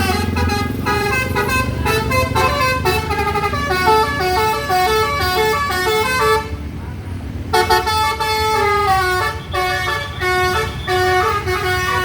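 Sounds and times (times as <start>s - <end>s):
bus air horns playing a melody: 0.0s - 6.6s, 7.5s - 12.0s
bus engine running: 0.0s - 12.0s.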